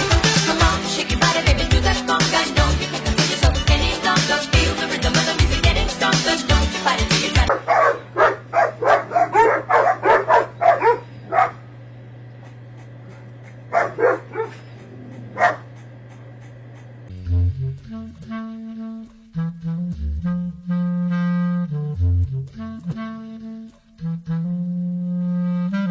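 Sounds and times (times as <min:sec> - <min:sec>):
instrumental music: 0:00.0 - 0:07.5, 0:17.1 - 0:25.9
dog barking: 0:07.5 - 0:11.7, 0:12.5 - 0:15.8
low steady hum: 0:07.5 - 0:25.8.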